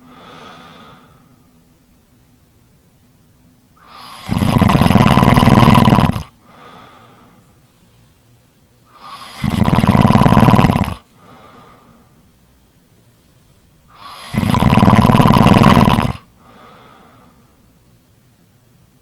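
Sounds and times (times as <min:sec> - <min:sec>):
soft breath: 0:00.0 - 0:01.6, 0:06.4 - 0:09.5, 0:11.0 - 0:12.3, 0:16.3 - 0:17.7
person snoring loudly: 0:03.8 - 0:06.3, 0:08.9 - 0:11.1, 0:13.9 - 0:16.3.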